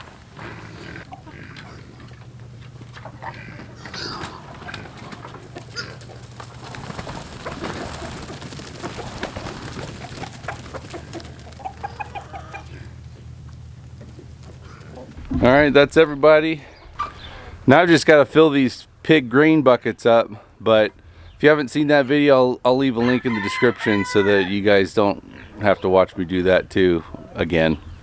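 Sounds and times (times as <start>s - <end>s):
steady low hum: 0.0s - 7.1s, 12.6s - 21.5s
chickens clucking: 0.0s - 28.0s
knocks and clicks: 15.2s - 16.3s.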